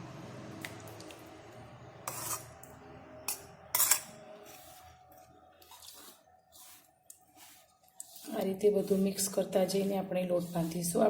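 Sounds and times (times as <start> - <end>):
scraping in a mixing bowl: 2.1 - 2.5, 3.8 - 11.0.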